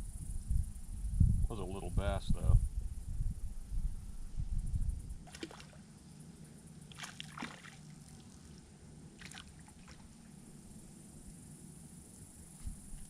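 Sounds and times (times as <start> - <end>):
light water splashing: 5.2 - 5.9, 6.9 - 10.4.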